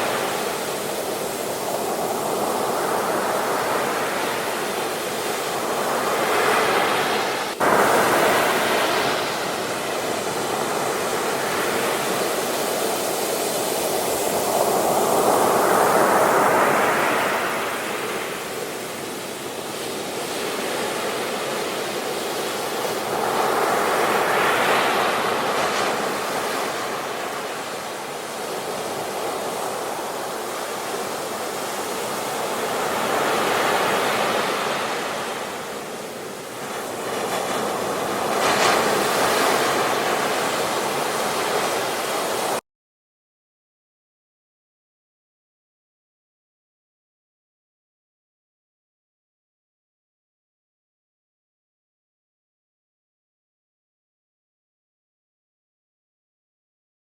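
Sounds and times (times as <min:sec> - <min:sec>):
sea waves breaking on shore: 0:00.0 - 0:42.6.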